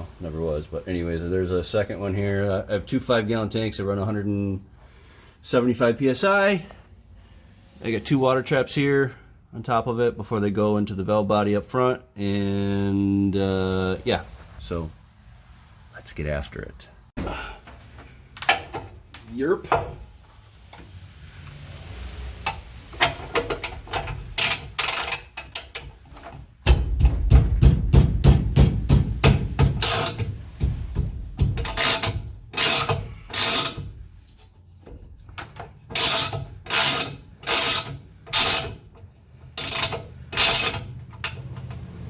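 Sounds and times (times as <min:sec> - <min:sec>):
ratchet wrench clicking: 0:22.4 - 0:26.4, 0:28.6 - 0:30.4, 0:31.4 - 0:34.0, 0:35.4 - 0:41.9
low hum: 0:26.1 - 0:33.2.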